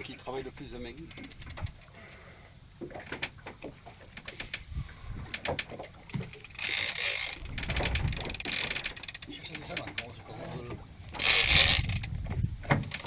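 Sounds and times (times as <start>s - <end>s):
fishing reel ratchet clicks: 6.1s - 10.0s, 11.2s - 12.1s.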